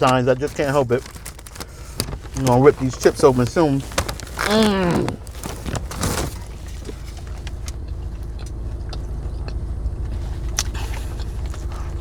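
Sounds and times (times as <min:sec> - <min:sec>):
small clicks and rustles: 0:00.0 - 0:07.9
vehicle engine rumble: 0:00.0 - 0:12.0.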